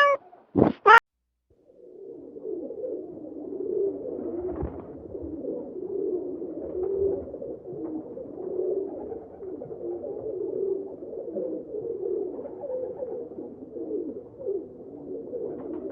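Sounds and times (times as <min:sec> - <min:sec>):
short thump: 0:00.6 - 0:00.9
pigeons cooing: 0:01.6 - 0:15.9.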